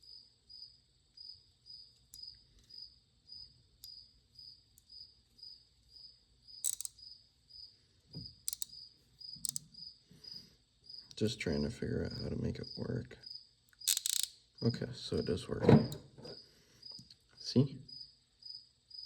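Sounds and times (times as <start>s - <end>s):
cricket chirping: 0.0s - 19.0s
hand ratchet clicking: 6.6s - 7.0s, 8.4s - 8.7s, 9.4s - 9.7s, 13.8s - 14.4s.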